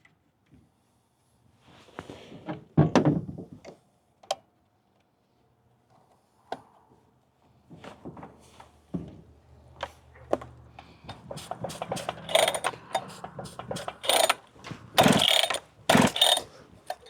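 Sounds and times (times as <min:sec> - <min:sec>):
handling knocks and clunks: 0:07.7 - 0:17.0.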